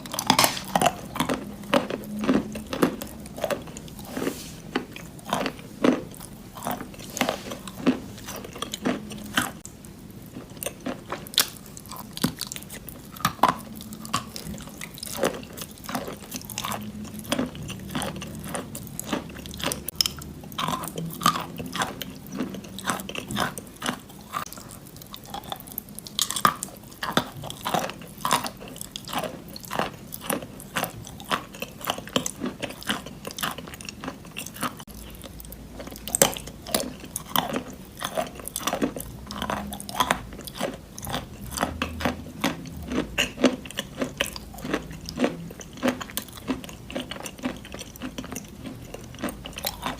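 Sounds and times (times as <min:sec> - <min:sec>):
chalk crunching while chewed: 0:00.0 - 0:49.9.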